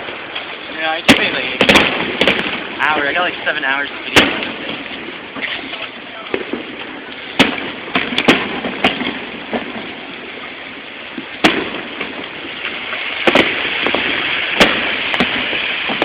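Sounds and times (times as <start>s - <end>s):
fireworks bangs: 0.0s - 16.0s
steady background hiss: 0.0s - 16.0s.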